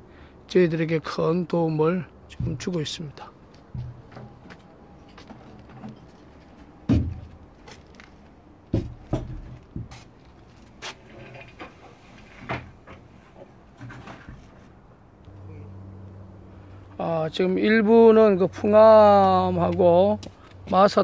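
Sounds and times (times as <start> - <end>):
irregular knocks and clunks: 2.3 - 7.5, 8.7 - 10.0, 10.9 - 14.7.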